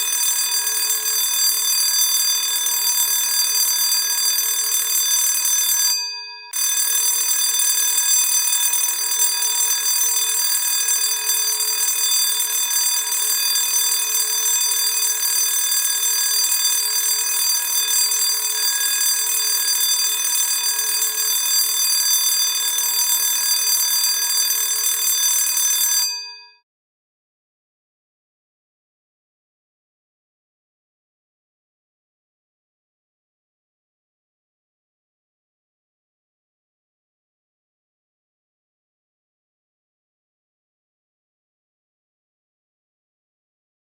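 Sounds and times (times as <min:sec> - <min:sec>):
school bell ringing: 0:00.0 - 0:26.4.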